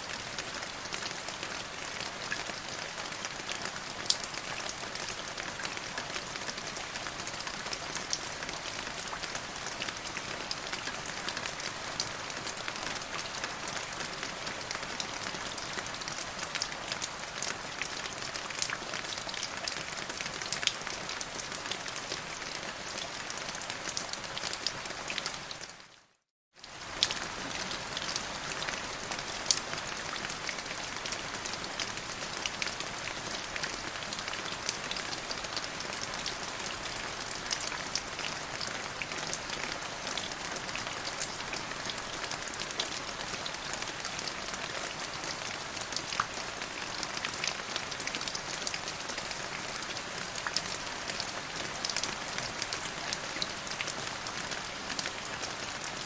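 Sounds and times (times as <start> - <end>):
rain falling: 0.0 - 26.0, 26.6 - 56.0.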